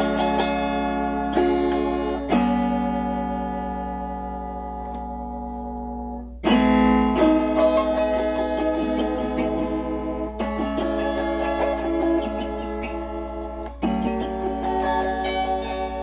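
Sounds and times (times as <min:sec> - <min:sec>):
autoharp strummed chords: 0:00.0 - 0:16.0.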